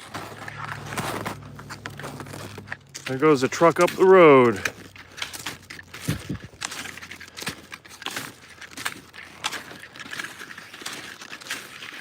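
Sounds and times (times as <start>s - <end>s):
skis crunching in snow: 0.0s - 12.0s.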